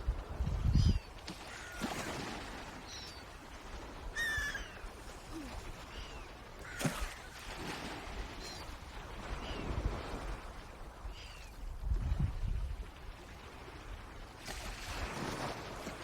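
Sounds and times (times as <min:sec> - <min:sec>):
birds calling: 0:04.1 - 0:04.9.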